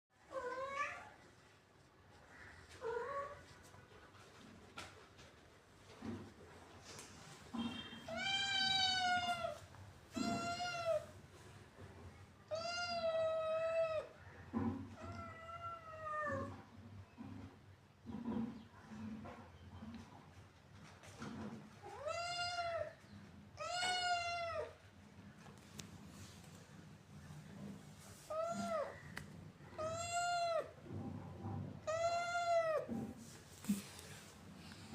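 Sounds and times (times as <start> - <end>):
cat meowing: 10.2 - 11.1, 29.7 - 30.8.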